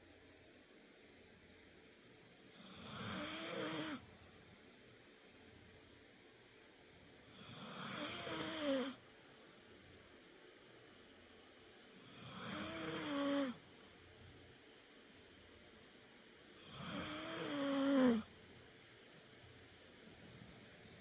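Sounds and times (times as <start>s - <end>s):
pet snoring: 2.6s - 4.1s, 7.3s - 9.0s, 12.0s - 13.6s, 16.6s - 18.3s.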